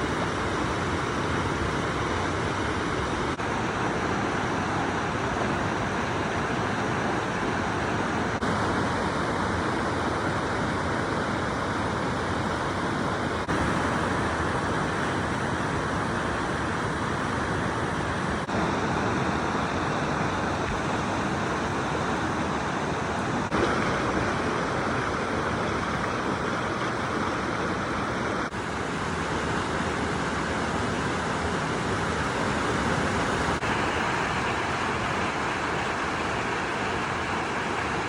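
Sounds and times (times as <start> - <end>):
stream water flowing: 0.0 - 38.0.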